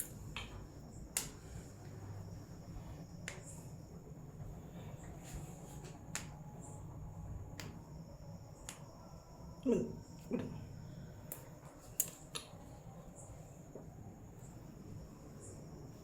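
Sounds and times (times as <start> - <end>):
sharp snaps of head massage: 0.0 - 1.6, 3.2 - 3.7, 5.8 - 6.4, 7.6 - 7.8, 8.6 - 8.9
steady low hum: 0.0 - 16.0.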